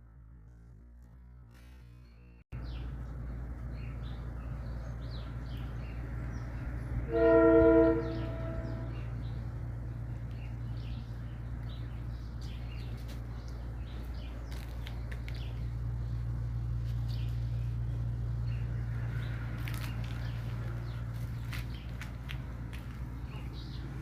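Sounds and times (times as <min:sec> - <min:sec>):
low hum: 0:00.0 - 0:14.3.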